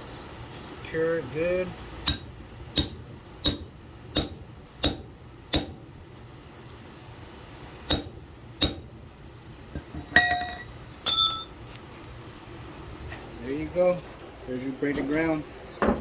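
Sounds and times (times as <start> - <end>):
hammer striking chisel: 2.0 - 6.0, 7.9 - 9.1
metallic clink: 2.0 - 6.0, 7.9 - 11.7.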